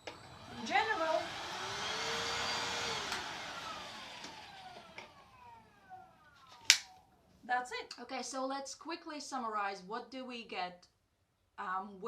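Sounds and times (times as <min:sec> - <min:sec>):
vacuum motor whirring: 0:00.0 - 0:06.7.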